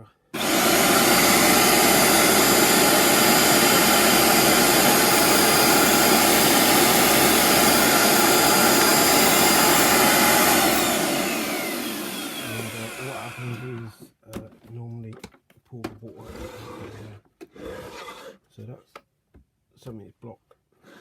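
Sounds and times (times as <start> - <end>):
vacuum motor whining: 0.4 - 13.9.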